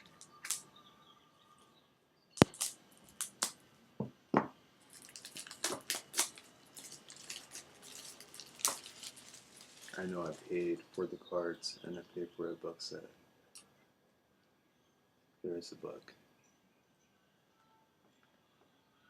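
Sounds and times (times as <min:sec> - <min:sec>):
packaging clicks: 0:00.0 - 0:00.6, 0:02.4 - 0:03.6, 0:04.8 - 0:10.4
packaging crinkling and rustling: 0:00.0 - 0:00.6, 0:02.4 - 0:03.6, 0:04.8 - 0:10.9.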